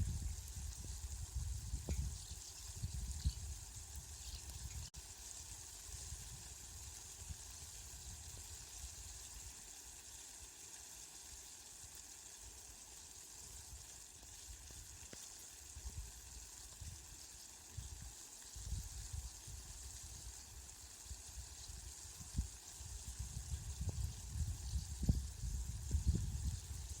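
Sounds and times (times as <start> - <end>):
steady rain hiss: 0.0 - 27.0.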